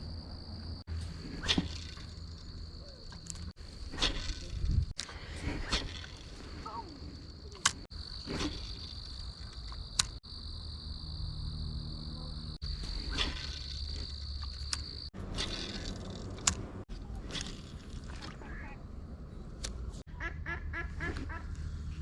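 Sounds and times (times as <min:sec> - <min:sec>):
insects trilling: 0:05.7 - 0:16.2
sharp clicks: 0:09.3 - 0:10.2.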